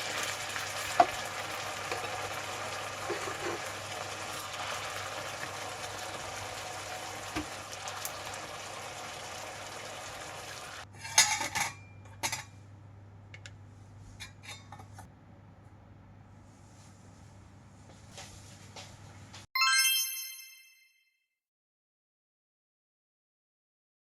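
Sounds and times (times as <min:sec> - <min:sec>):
dishes and utensils clattering: 0:03.0 - 0:03.7, 0:10.9 - 0:12.6, 0:14.2 - 0:15.1.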